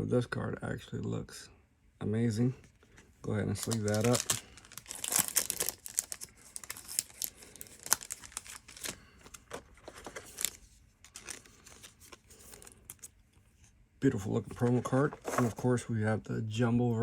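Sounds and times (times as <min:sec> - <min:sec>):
plastic card sleeve crinkling: 0:02.8 - 0:13.7.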